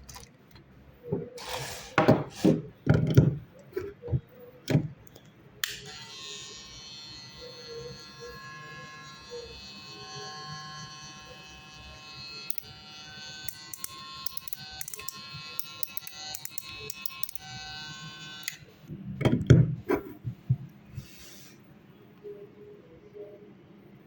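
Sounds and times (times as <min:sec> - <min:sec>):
electric hair clipper whining: 0:05.6 - 0:18.7.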